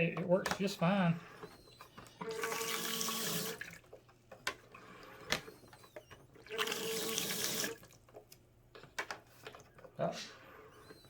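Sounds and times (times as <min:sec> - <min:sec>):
pump whine: 0:01.1 - 0:04.0, 0:04.7 - 0:08.0
water spraying into plastic bowl: 0:02.2 - 0:03.9, 0:06.4 - 0:08.0.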